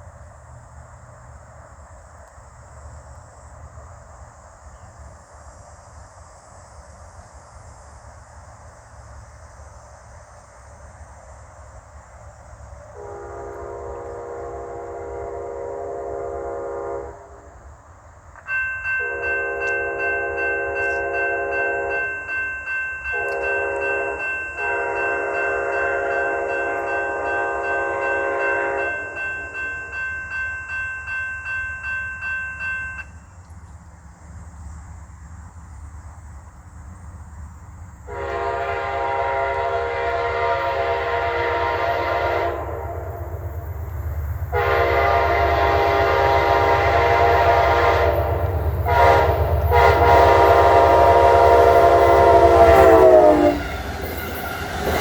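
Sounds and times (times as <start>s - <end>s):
train rumble: 0.0s - 55.0s
train horn blasts: 12.9s - 17.6s, 19.0s - 22.3s, 23.1s - 30.0s, 38.1s - 43.5s, 44.5s - 55.0s
bell ringing: 18.5s - 33.3s.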